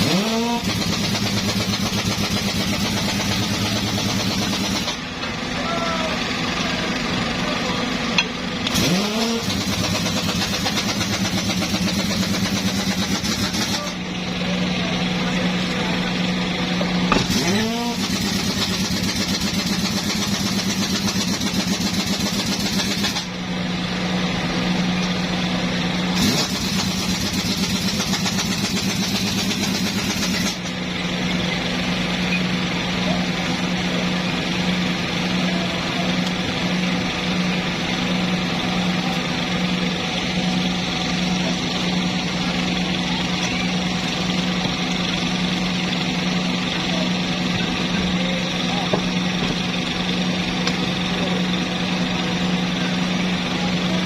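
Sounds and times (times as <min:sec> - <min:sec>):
engine running: 0:00.0 - 0:54.0.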